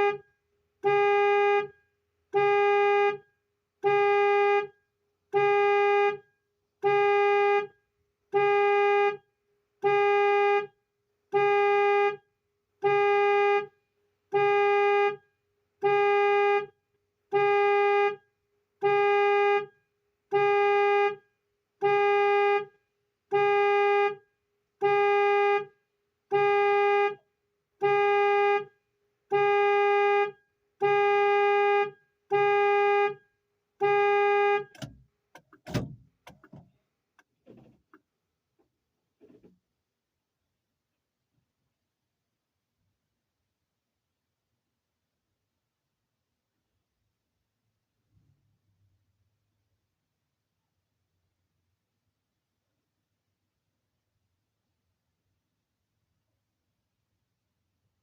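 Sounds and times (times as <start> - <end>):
car horn alarm honking: 0.8 - 3.2, 3.8 - 4.7, 5.3 - 6.2, 6.8 - 7.7, 8.3 - 9.2, 9.8 - 10.7, 11.3 - 12.2, 12.8 - 13.7, 14.3 - 15.2, 15.8 - 16.7, 17.3 - 18.2, 18.8 - 19.7, 21.8 - 22.7, 23.3 - 24.2, 24.8 - 25.7, 26.3 - 27.2, 27.8 - 28.7, 29.3 - 33.2, 33.8 - 35.0.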